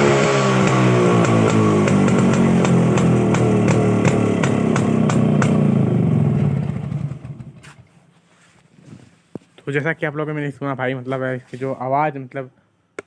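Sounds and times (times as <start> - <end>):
motorcycle engine revs falling: 0.0 - 7.9
engine pops: 0.6 - 5.8.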